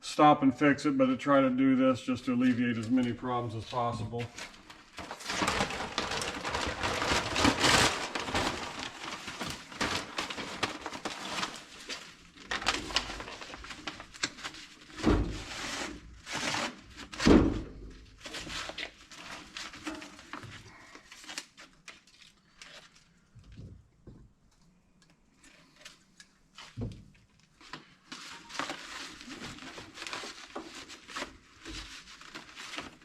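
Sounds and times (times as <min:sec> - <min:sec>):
twine rustling and crackling: 0:02.4 - 0:16.8, 0:25.4 - 0:33.0.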